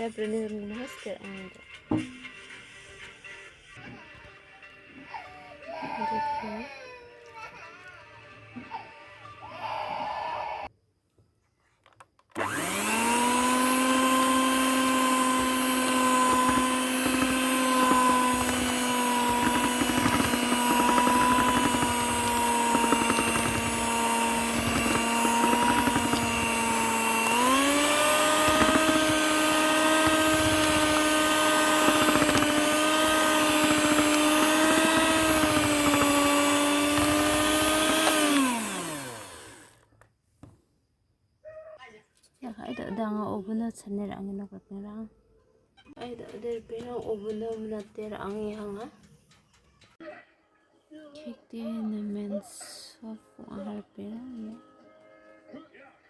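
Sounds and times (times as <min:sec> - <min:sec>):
kitchen mixer motor whining: 0:12.4 - 0:39.9.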